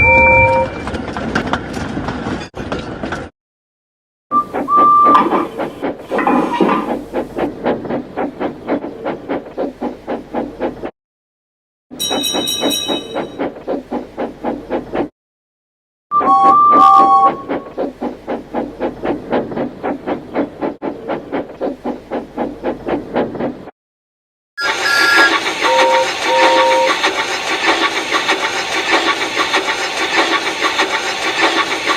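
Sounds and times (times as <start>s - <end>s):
high train whistle: 24.6s - 27.0s
steam locomotive chuffing: 24.6s - 31.9s.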